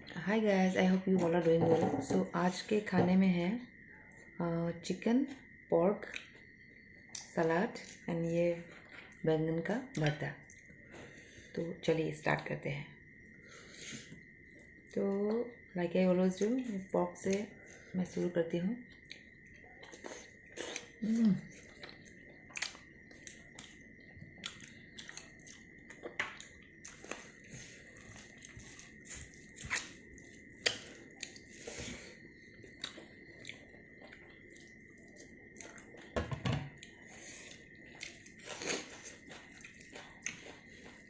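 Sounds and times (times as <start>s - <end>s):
wet chewing mouth clicks: 32.7s - 35.9s, 37.3s - 41.0s.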